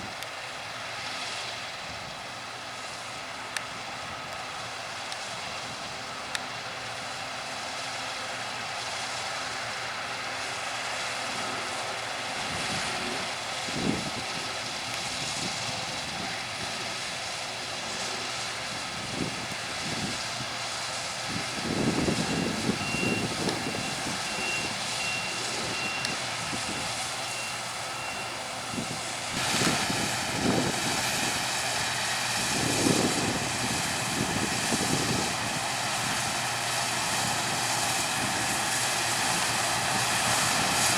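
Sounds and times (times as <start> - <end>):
farm machinery engine drone: 0.0 - 40.9
faint high beeps: 22.2 - 29.0.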